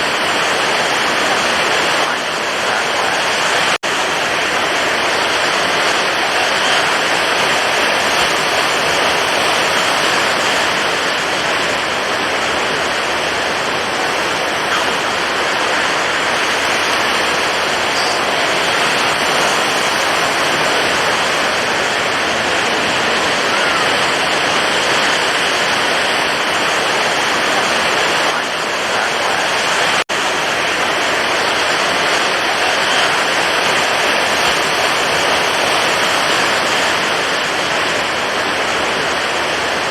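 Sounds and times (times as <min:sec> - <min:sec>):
heavy ocean surf: 0:00.0 - 0:39.9.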